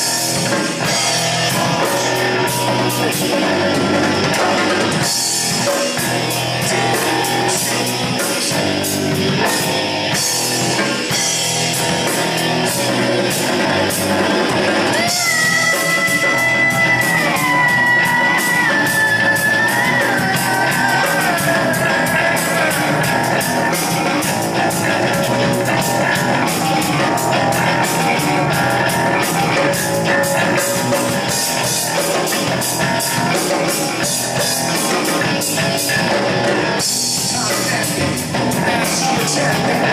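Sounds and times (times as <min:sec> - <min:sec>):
live rock band playing: 0:00.0 - 0:39.9.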